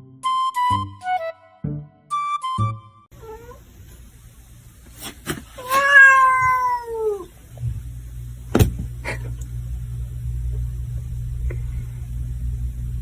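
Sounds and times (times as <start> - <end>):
cat meowing: 3.2 - 3.6, 5.6 - 7.3
steady low hum: 7.2 - 13.0.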